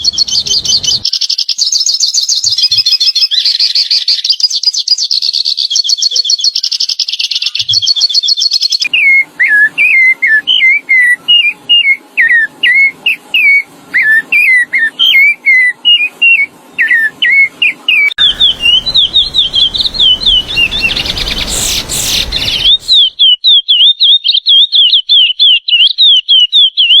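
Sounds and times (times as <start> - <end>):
songbirds singing: 0.0 - 27.0.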